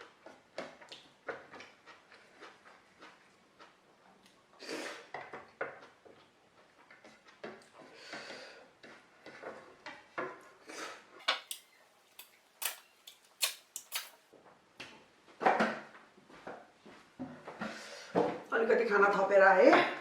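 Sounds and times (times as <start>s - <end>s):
crunching chewing: 0.0s - 7.8s, 11.4s - 14.2s
cutlery clicking on a plate: 11.2s - 14.1s.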